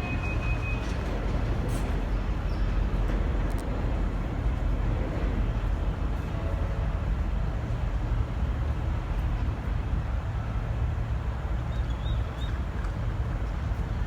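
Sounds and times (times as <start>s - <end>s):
diesel train rumbling: 0.0s - 11.7s.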